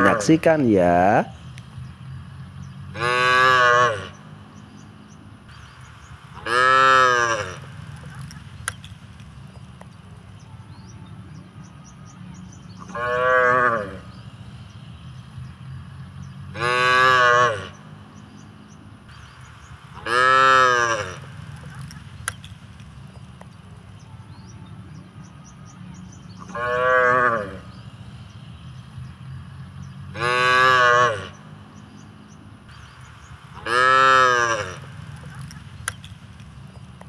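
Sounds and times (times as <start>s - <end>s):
cows mooing: 0.0s - 1.2s, 2.9s - 4.3s, 6.4s - 8.2s, 12.8s - 14.1s, 16.5s - 18.0s, 20.0s - 21.8s, 26.4s - 27.7s, 30.1s - 31.6s, 33.6s - 35.6s.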